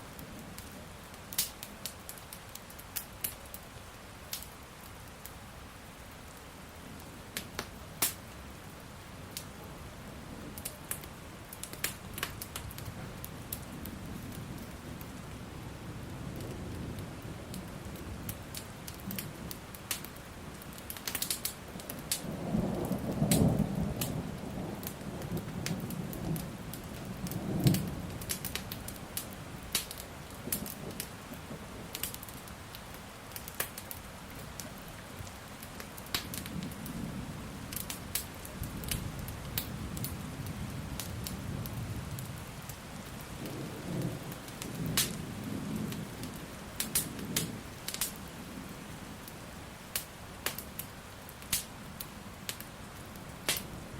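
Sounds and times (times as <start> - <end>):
steady rain: 0.0 - 53.9
wood fire crackling: 0.0 - 53.9
thunder rumbling: 21.7 - 32.2, 36.2 - 49.2.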